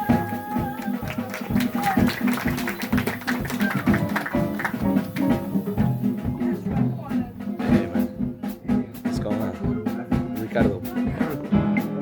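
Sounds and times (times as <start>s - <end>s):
instrumental music with bass: 3.4s - 12.0s.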